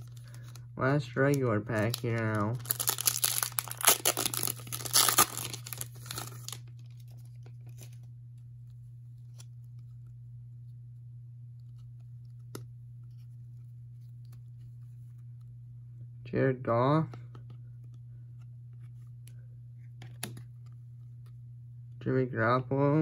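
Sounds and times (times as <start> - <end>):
plastic wrapper tearing and crinkling: 0.0 - 8.0
low hum: 0.0 - 23.0.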